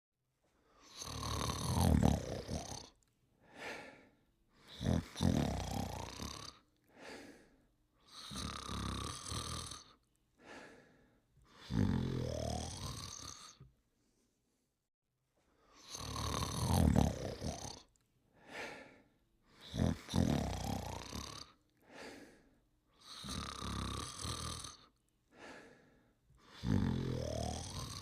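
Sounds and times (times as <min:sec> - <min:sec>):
rattling snores: 0:00.8 - 0:03.0, 0:04.7 - 0:06.6, 0:08.1 - 0:10.0, 0:11.6 - 0:13.6, 0:15.8 - 0:17.9, 0:19.6 - 0:21.6, 0:23.0 - 0:24.9, 0:26.4 - 0:28.0
faint breath out: 0:03.4 - 0:04.2, 0:06.9 - 0:07.6, 0:10.4 - 0:11.2, 0:18.4 - 0:19.2, 0:21.8 - 0:22.6, 0:25.3 - 0:26.2.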